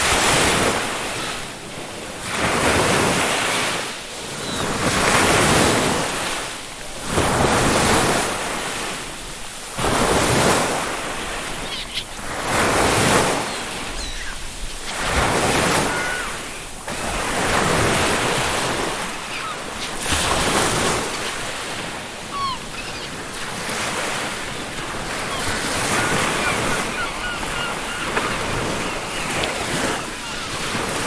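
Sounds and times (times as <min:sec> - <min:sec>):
ocean surf breaking: 0:00.0 - 0:31.0
seagulls calling: 0:03.3 - 0:05.9, 0:09.9 - 0:31.0.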